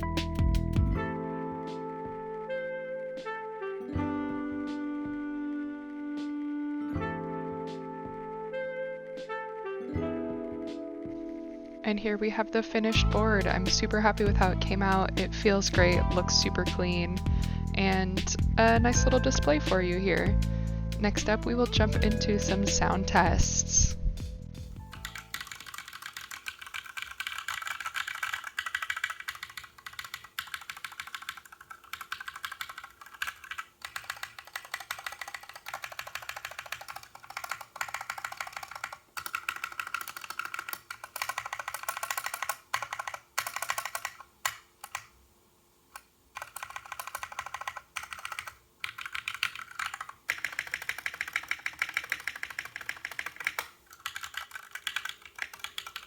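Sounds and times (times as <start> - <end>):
mechanical keyboard keystroke clacks: 24.9 - 45.1, 46.0 - 56.0.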